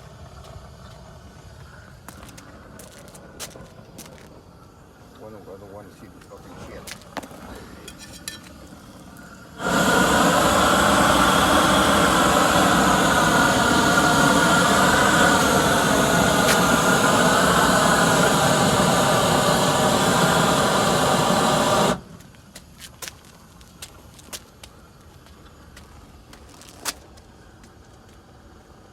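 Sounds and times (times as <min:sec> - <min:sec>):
steady pitched whine: 0:00.0 - 0:26.5
heat-welding tool hissing: 0:06.7 - 0:22.4.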